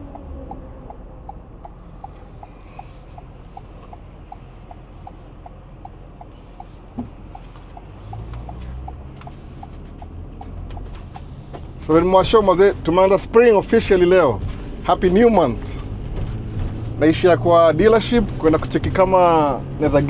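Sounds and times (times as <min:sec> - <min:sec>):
engine and road rumble: 0:00.0 - 0:20.0
turn signal ticking: 0:00.0 - 0:20.0.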